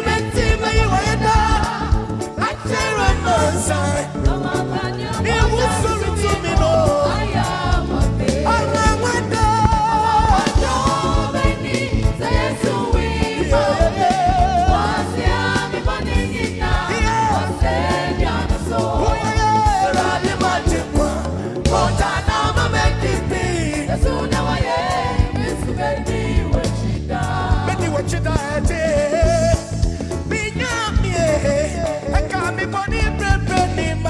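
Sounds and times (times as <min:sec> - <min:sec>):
backing voices: 0:00.0 - 0:28.2
keyboard bass and drums: 0:00.0 - 0:34.0
lead singer with vibrato: 0:00.0 - 0:34.0.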